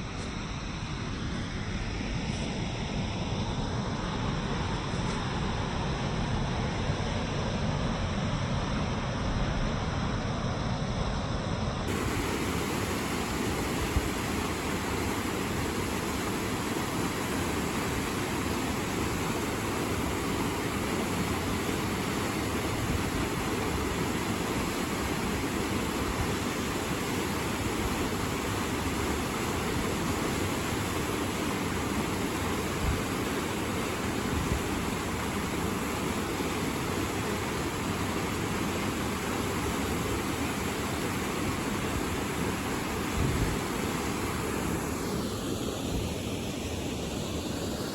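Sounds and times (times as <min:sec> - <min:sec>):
waterfall rushing: 0:11.9 - 0:45.3.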